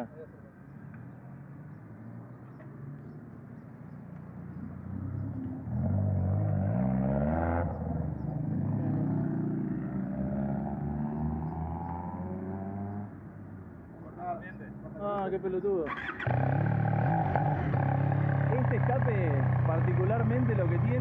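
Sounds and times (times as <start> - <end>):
motorcycle engine revving: 4.8 - 13.1, 15.9 - 21.0.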